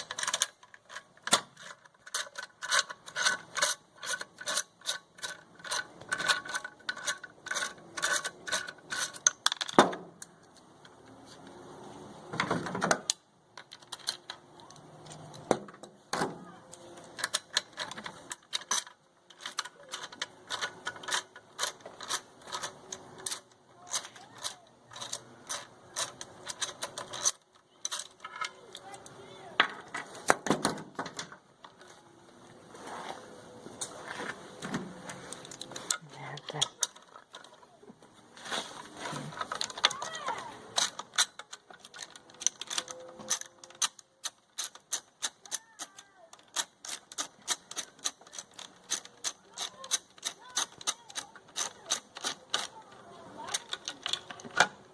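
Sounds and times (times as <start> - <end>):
hand ratchet clicking: 40.8 - 52.8.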